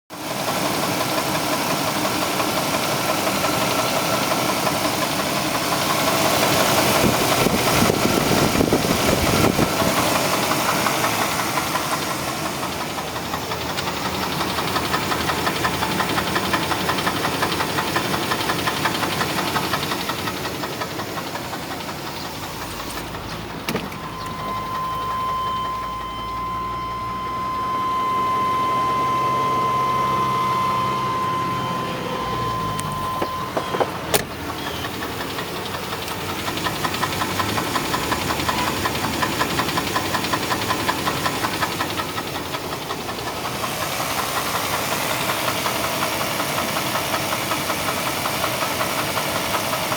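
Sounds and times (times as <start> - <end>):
engine knocking rhythmically: 0.1 - 49.9
steady high tone: 23.4 - 34.4.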